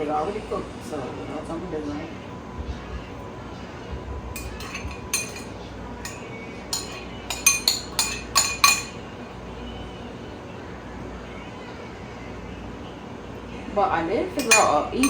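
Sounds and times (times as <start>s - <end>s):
utensils clinking against dishes: 4.4s - 9.1s, 14.2s - 15.0s.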